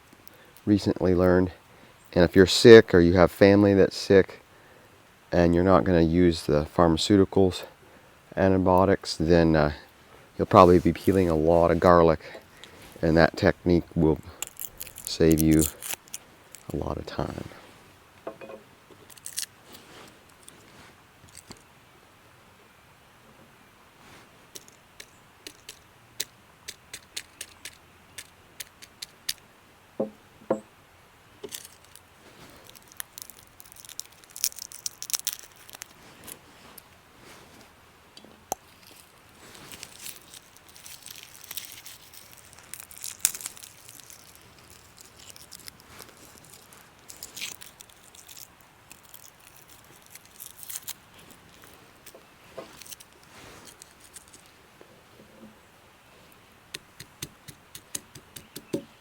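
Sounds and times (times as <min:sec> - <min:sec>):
garlic skins crackling and tearing: 0:10.4 - 0:17.4, 0:19.0 - 0:20.6, 0:21.2 - 0:21.7, 0:24.5 - 0:29.4, 0:31.4 - 0:37.0, 0:38.4 - 0:54.6, 0:56.7 - 0:59.0
knocks: 0:30.0 - 0:30.7.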